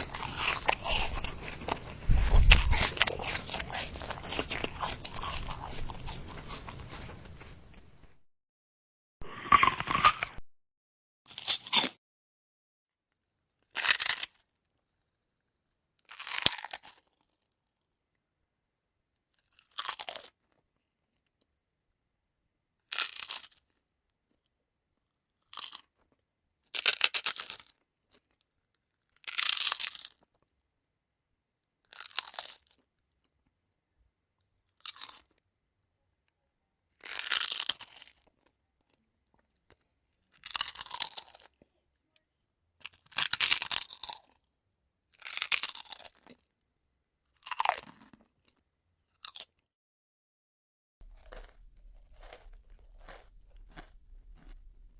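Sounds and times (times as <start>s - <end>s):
mouth chewing crunchy food: 0.0s - 8.2s, 9.2s - 10.4s, 11.3s - 12.0s, 13.7s - 15.0s, 16.0s - 17.6s, 19.3s - 21.5s, 22.8s - 30.7s, 31.7s - 33.7s, 34.4s - 35.5s, 36.9s - 41.7s, 42.8s - 46.6s, 47.3s - 49.7s, 51.0s - 54.9s.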